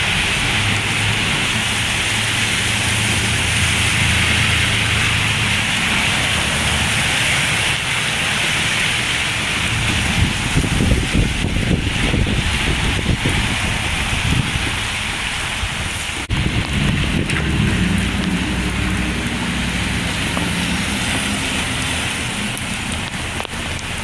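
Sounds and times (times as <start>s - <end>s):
heavy rain falling: 0.0s - 24.0s.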